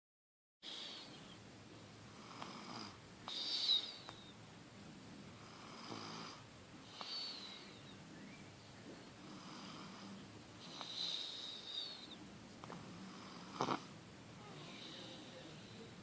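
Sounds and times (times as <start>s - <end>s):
high whistling snore: 2.5s - 4.4s, 5.8s - 8.5s, 9.3s - 12.2s
person snoring: 12.9s - 15.9s.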